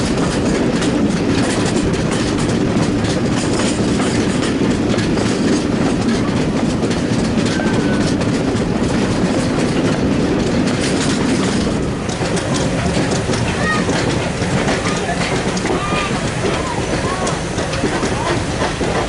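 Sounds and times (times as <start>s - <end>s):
train carriage rumble: 0.0s - 19.0s
wheels clicking over rail joints: 0.0s - 19.0s.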